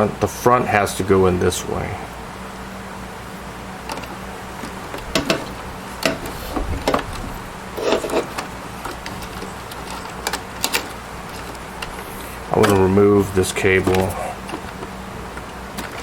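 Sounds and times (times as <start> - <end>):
steady low hum: 0.0 - 16.0
hard drive clicking into drive bay: 3.8 - 13.1, 13.8 - 16.0.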